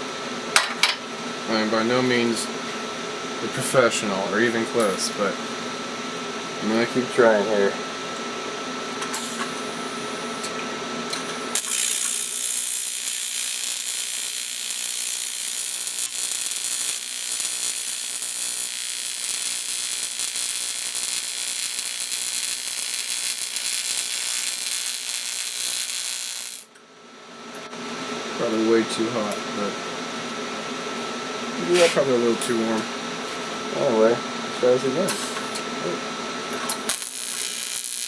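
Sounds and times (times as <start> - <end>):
welding arc buzzing hiss: 8.6 - 26.8, 30.4 - 38.0.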